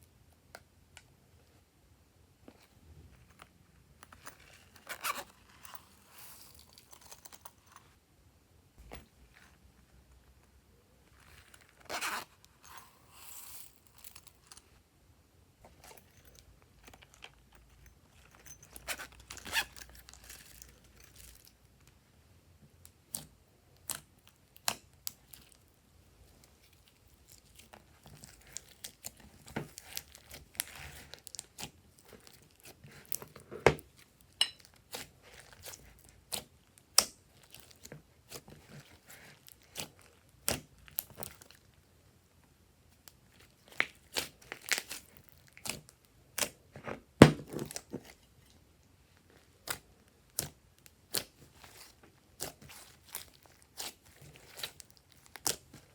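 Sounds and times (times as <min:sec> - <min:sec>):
slime crackling and squelching: 0:23.0 - 0:41.8, 0:42.9 - 0:46.7, 0:47.7 - 0:55.9.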